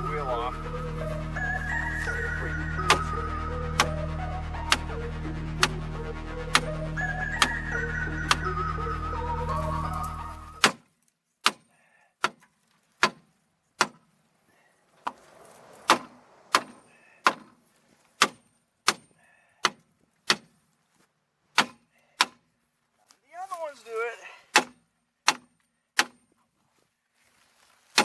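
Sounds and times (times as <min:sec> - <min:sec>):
hammer striking metal: 0:15.9 - 0:17.5.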